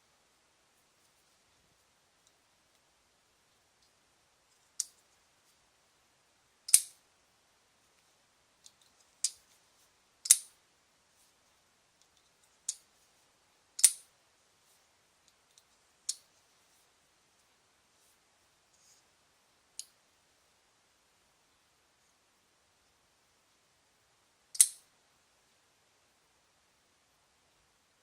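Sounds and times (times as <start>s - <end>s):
pocket knife clicking open and shut: 6.7s - 7.0s, 10.2s - 10.5s, 13.8s - 14.0s, 24.6s - 24.8s.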